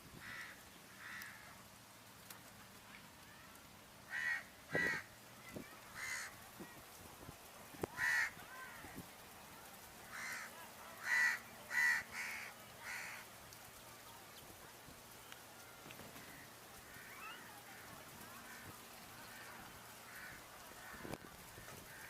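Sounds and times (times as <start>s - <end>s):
crow cawing: 0.2s - 1.6s, 4.1s - 5.1s, 5.9s - 6.4s, 7.9s - 8.9s, 10.1s - 13.3s, 16.2s - 22.0s.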